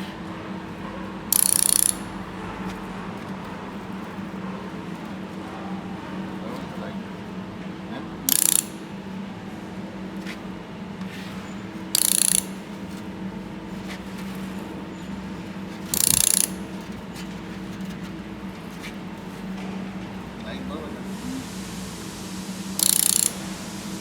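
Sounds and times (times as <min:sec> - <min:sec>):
laser welder hissing buzz: 0:21.0 - 0:24.0.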